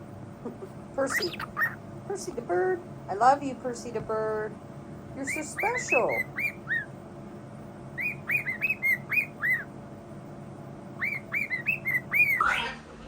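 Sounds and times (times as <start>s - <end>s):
bird whistling chirpy notes: 1.0s - 1.8s, 5.2s - 6.9s, 8.0s - 9.7s, 11.0s - 12.7s.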